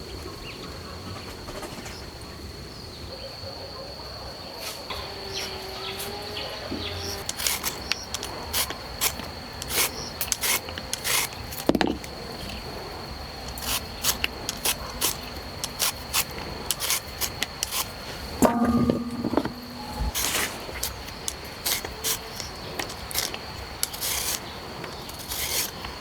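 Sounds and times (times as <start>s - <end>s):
high insect drone: 0.1s - 26.0s
scraping against wood: 13.5s - 26.0s.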